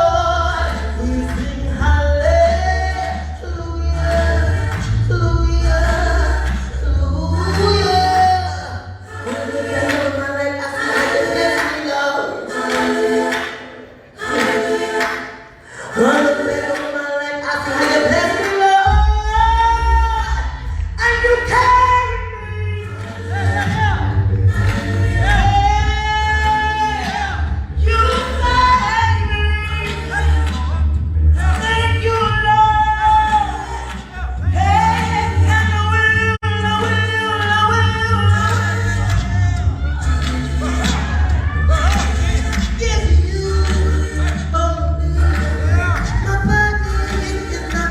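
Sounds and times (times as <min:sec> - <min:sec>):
deep steady bass: 0:00.0 - 0:08.9, 0:18.8 - 0:47.9
group gospel singing: 0:00.0 - 0:47.9.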